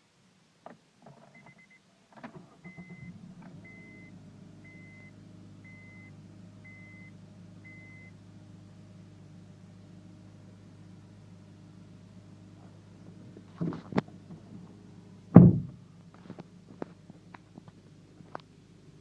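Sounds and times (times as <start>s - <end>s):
car warning chime beeping: 2.6s - 8.2s
clunk: 15.3s - 17.0s.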